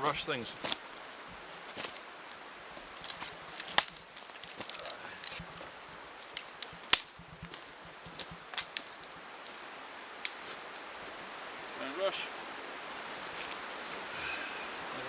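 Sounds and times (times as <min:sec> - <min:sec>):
dry sticks snapping: 0:01.8 - 0:09.6.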